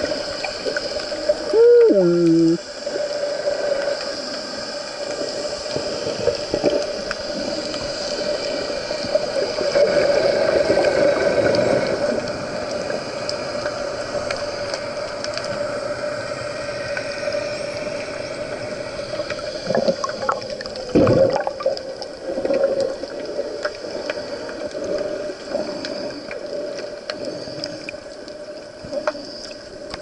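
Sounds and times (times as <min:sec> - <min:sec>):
steady underwater hum: 0:00.0 - 0:30.0
gurgling bubble bursts: 0:19.5 - 0:23.4.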